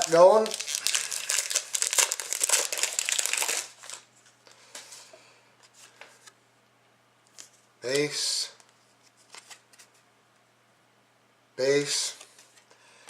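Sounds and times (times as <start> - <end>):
cards rustling: 0.0 - 4.1, 9.1 - 10.0
wrapper crinkling as torn open: 0.0 - 4.1.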